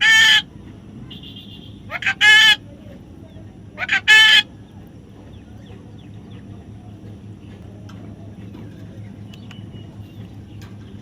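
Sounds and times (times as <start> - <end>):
bird harsh call: 0.0 - 0.5, 1.1 - 2.6, 3.8 - 4.5
low steady hum: 0.0 - 11.0.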